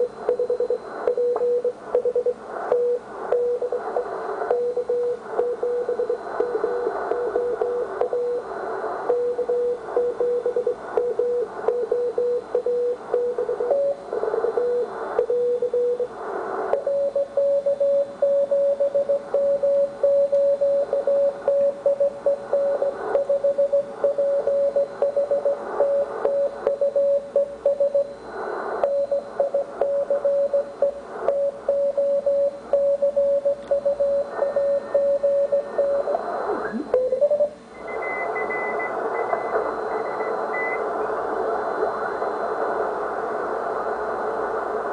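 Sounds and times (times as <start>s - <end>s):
radio band hiss: 1.7s - 10.0s, 13.0s - 15.2s, 16.1s - 16.9s, 27.2s - 31.7s, 34.0s - 44.9s
morse code tone: 31.7s - 40.9s.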